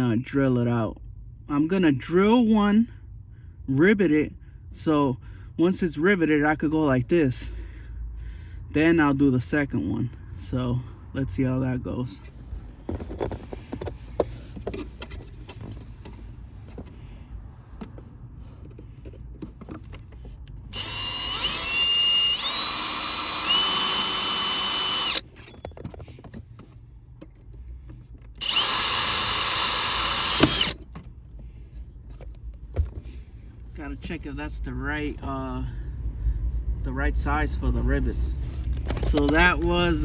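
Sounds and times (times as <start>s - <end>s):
electric drill whining: 20.6s - 25.6s, 28.4s - 30.8s.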